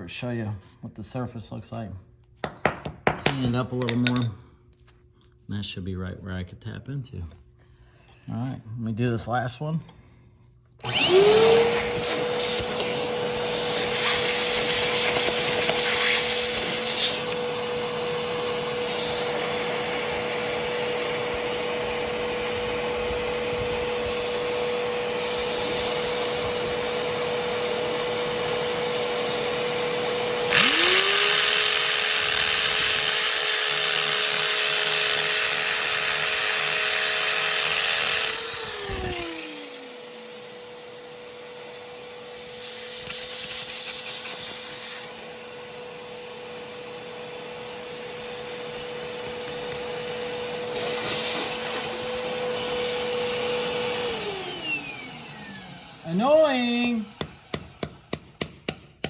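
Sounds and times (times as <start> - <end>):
vacuum whining: 10.8 - 57.8
drill boring into concrete: 10.8 - 58.8.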